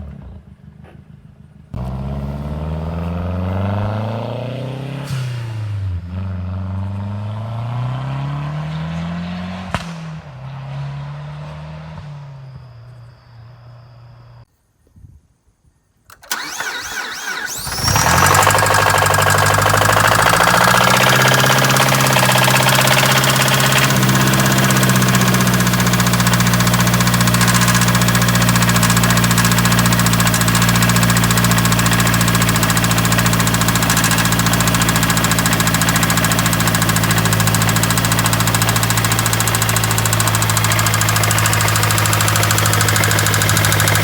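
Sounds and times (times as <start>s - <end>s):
car engine idling: 16.3s - 44.0s
engine rod knock: 18.3s - 44.0s.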